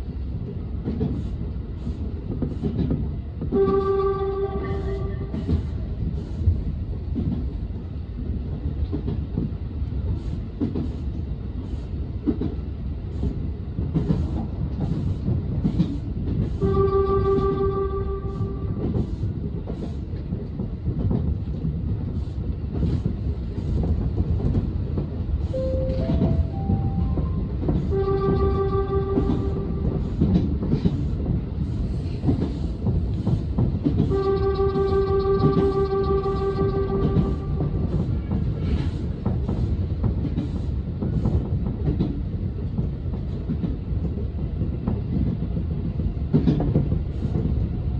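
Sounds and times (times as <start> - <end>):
train rumble: 0.0 - 47.9
train wheels clacking on rails: 0.0 - 47.9
train horn blast: 3.5 - 5.6, 16.6 - 18.9, 25.6 - 30.2, 34.0 - 38.1.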